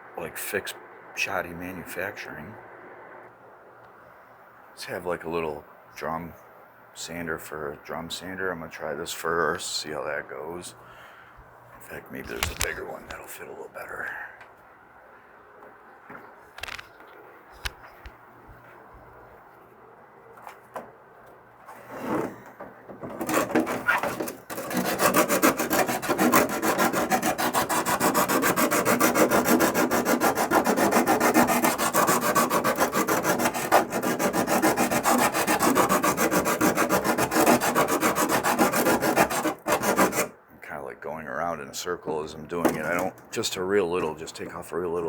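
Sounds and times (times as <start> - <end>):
sanding drum rasping on plastic: 23.1 - 40.3, 42.6 - 43.2.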